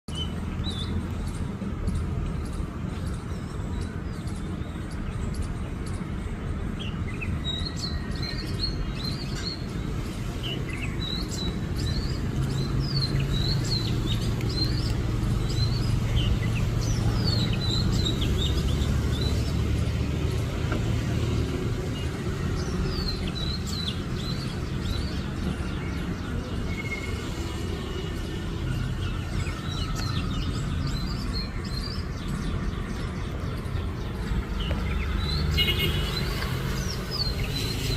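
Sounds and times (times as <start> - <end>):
songbird chirping: 0.1 - 37.9.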